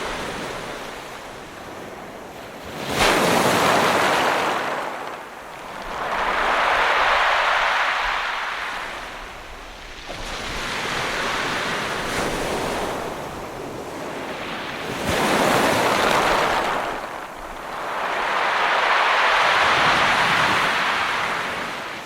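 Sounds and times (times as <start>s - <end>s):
waves breaking and washing back: 0.0s - 22.0s.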